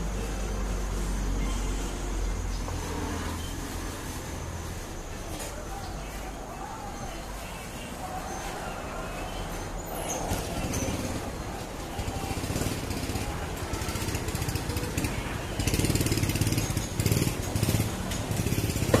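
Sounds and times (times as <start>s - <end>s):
small engine rattling: 9.3s - 19.0s.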